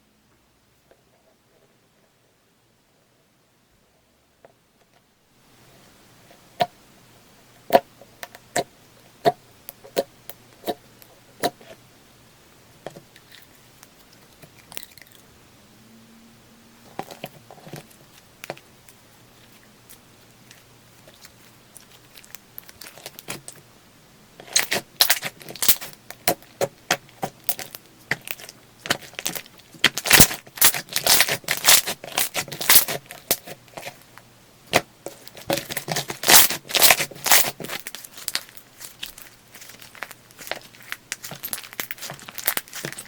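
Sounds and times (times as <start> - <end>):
slime squeezed by hand crackling: 24.5 - 26.4, 27.2 - 33.9, 35.1 - 43.0.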